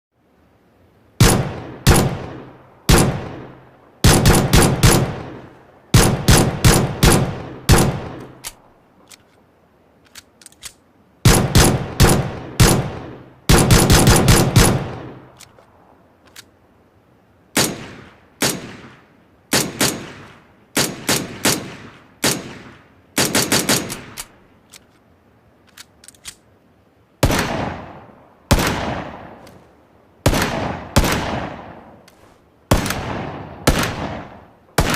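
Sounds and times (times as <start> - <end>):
gunshots with echo: 1.2 - 8.4, 11.3 - 15.3, 30.3 - 31.9, 32.7 - 34.9.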